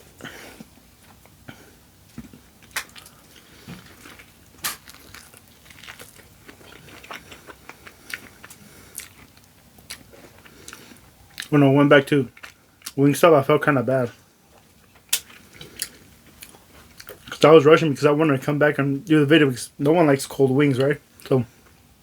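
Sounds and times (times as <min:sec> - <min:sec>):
person chewing: 0:02.1 - 0:11.5, 0:12.3 - 0:13.0, 0:14.5 - 0:17.4
food crunching: 0:02.1 - 0:11.6, 0:12.2 - 0:13.0, 0:14.5 - 0:17.4.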